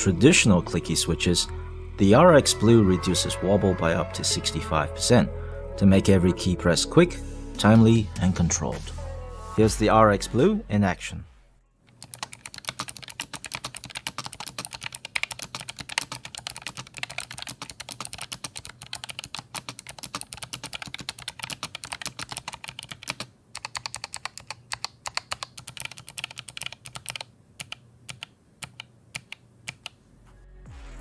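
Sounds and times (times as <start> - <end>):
typing on clicky mechanical keyboard: 11.9 - 30.0.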